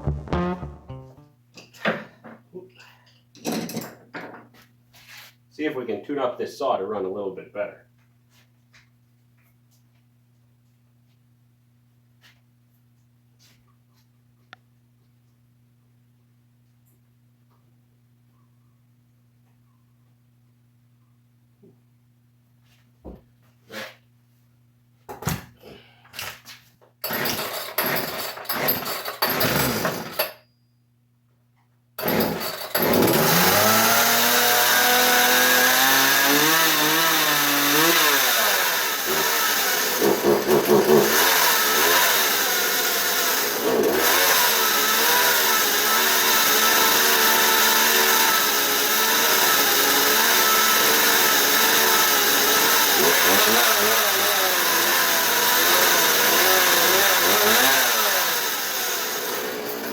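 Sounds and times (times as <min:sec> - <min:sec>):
chainsaw pull-start tugs: 0:27.0 - 0:30.4, 0:32.0 - 0:59.9
chainsaw engine running: 0:27.1 - 0:30.2, 0:32.0 - 0:59.9.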